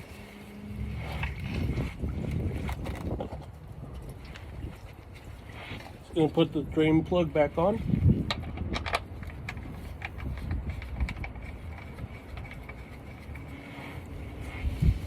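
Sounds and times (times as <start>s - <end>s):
steady low rumble: 0.0s - 15.0s.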